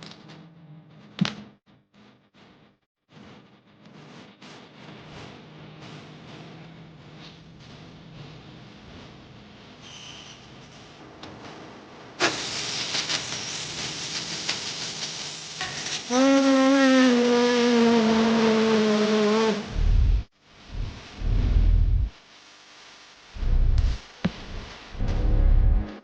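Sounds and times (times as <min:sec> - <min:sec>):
loud crackling hiss: 0:12.2 - 0:16.2
deep booms: 0:19.7 - 0:22.2, 0:23.4 - 0:25.9.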